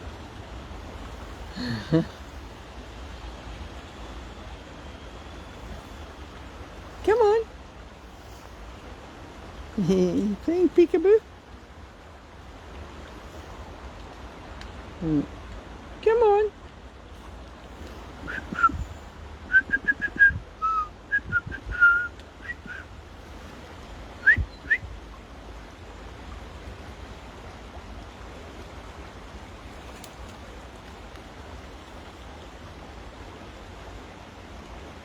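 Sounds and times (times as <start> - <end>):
rain: 0.0 - 35.0
river water: 0.0 - 35.0
person whistling: 18.3 - 18.8, 19.5 - 22.8, 24.2 - 24.8.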